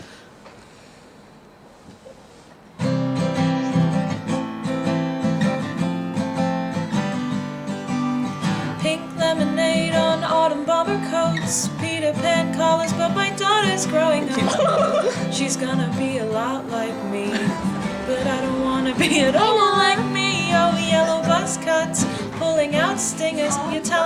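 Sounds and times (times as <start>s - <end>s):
strummed acoustic guitar: 2.7s - 24.0s
person singing: 8.8s - 24.0s.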